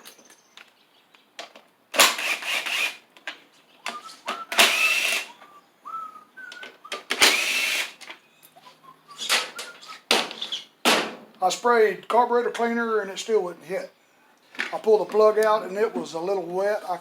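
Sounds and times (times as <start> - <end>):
power drill motor whine: 2.0 - 3.0, 4.3 - 5.4, 7.0 - 8.0.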